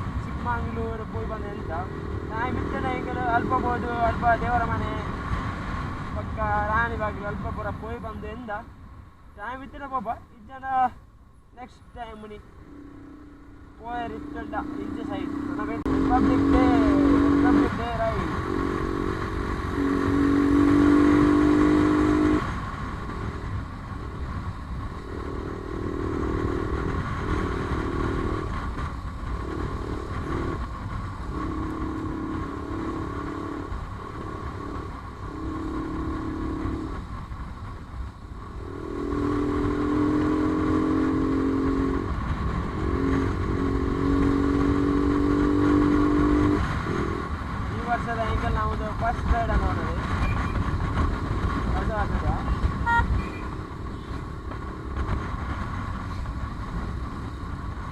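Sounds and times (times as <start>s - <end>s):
motorcycle engine running: 0.0s - 9.6s, 10.2s - 57.9s
steady low rumble: 0.0s - 57.9s.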